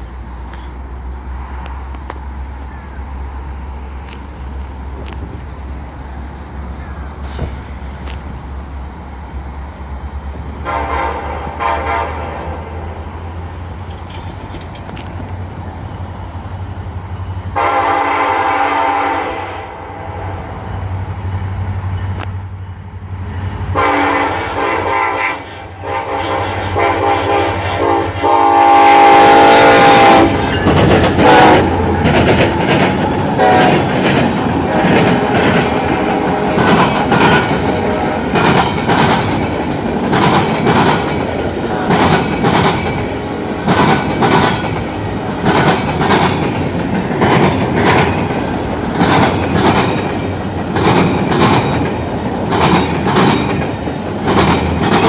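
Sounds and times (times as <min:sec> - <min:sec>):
locomotive air horn chord: 0:10.6 - 0:12.7, 0:17.6 - 0:20.6, 0:23.7 - 0:30.4, 0:31.2 - 0:31.9, 0:33.4 - 0:33.8, 0:34.7 - 0:38.4
train wheels clickety-clack: 0:13.8 - 0:15.8, 0:29.4 - 0:55.0.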